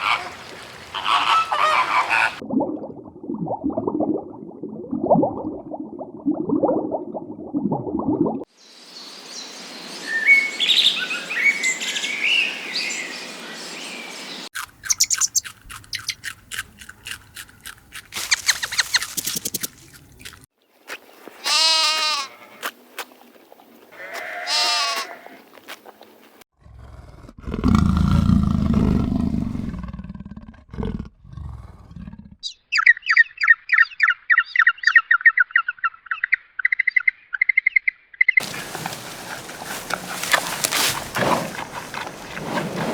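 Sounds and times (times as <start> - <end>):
birds chirping: 10.2 - 16.3, 37.7 - 42.9
wavering bleats: 24.0 - 25.4.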